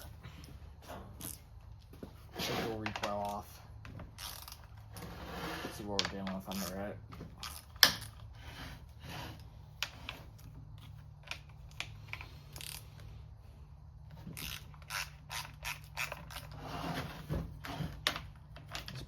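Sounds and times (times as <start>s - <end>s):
hand tools clicking and ratcheting: 2.8s - 5.1s, 6.0s - 8.4s, 11.2s - 13.0s, 14.2s - 16.6s.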